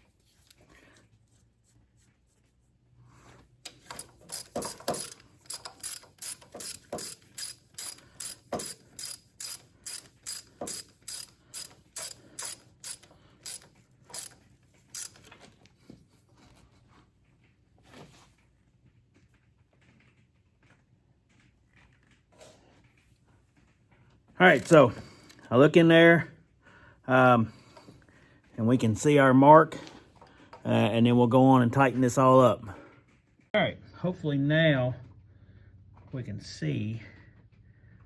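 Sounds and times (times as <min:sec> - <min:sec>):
ratchet wrench clicking: 0:03.7 - 0:15.4, 0:24.5 - 0:24.8.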